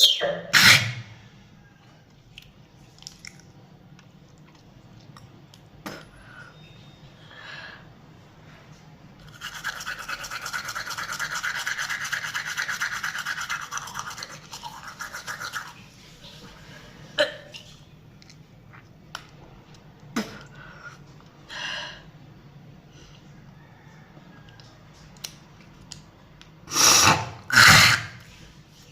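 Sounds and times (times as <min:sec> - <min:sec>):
toothbrush scrubbing teeth: 0:09.2 - 0:16.4.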